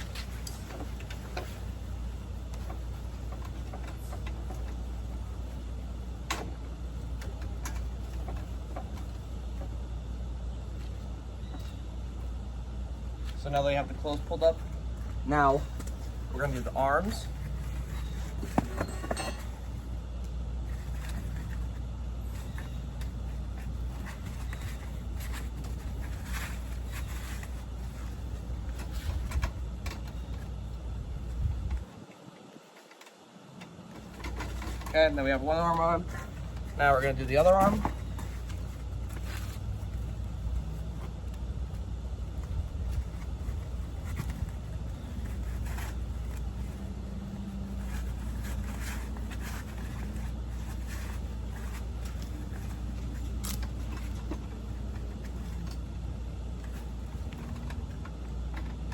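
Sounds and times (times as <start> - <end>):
fabric rustles and scrapes: 0.0 - 9.6, 13.0 - 58.9
steady low hum: 0.0 - 58.9
steady low rumble: 19.5 - 32.4, 33.9 - 58.9.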